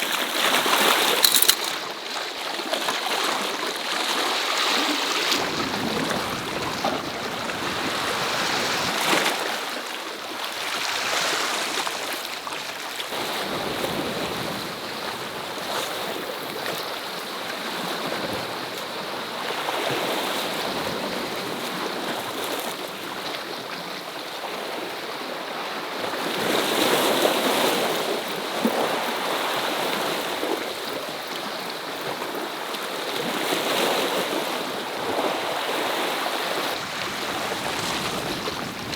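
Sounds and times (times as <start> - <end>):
sea waves washing on rocks: 4.4 - 17.1, 33.5 - 38.9.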